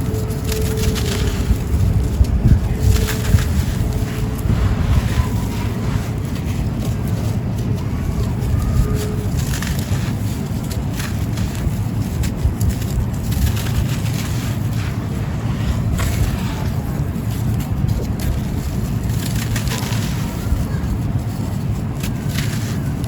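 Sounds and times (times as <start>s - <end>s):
sand-cement chunks crunching: 0.0s - 23.0s.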